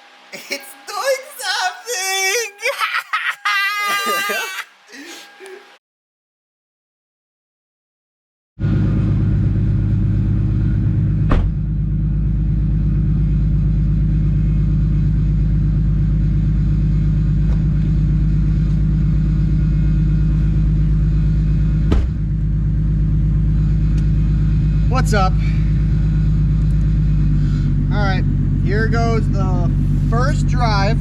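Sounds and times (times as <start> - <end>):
car engine idling: 8.6 - 31.0.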